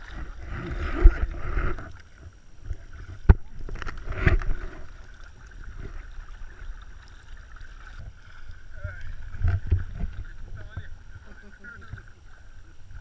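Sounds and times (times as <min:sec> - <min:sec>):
boat handling noises: 0:00.0 - 0:13.0
water splashing: 0:00.0 - 0:13.0.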